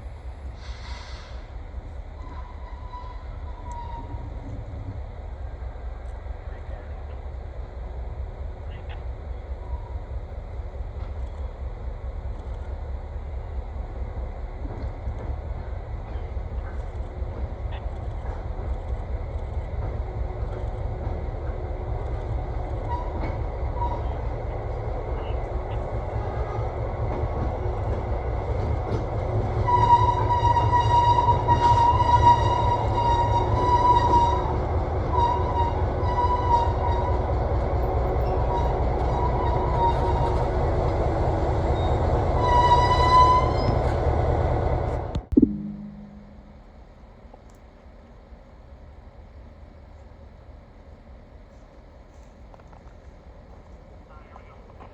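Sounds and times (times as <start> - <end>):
diesel locomotive engine rumble: 0.0 - 54.9.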